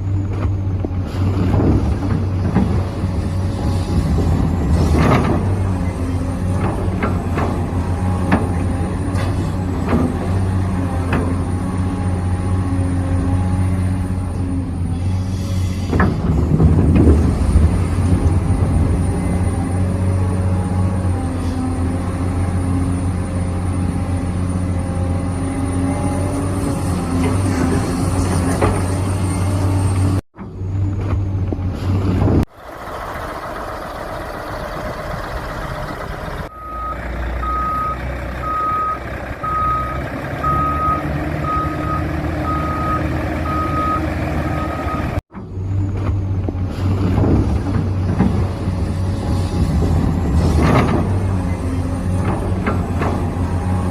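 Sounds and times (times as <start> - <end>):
engine-like hum: 0.0 - 53.9
reversing alarm beeping: 36.4 - 45.2.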